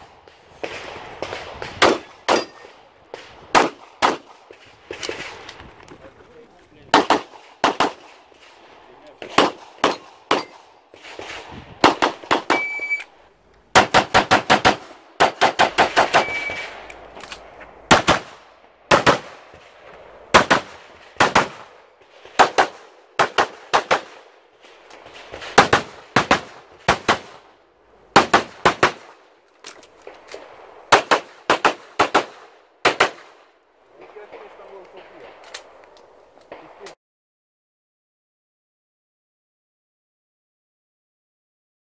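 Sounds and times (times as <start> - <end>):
pistol shots: 0.2 - 5.5, 6.9 - 13.0, 13.7 - 24.3, 25.0 - 27.4, 28.1 - 29.2, 30.0 - 33.4
brief ringing tones: 12.5 - 13.1, 16.2 - 16.7.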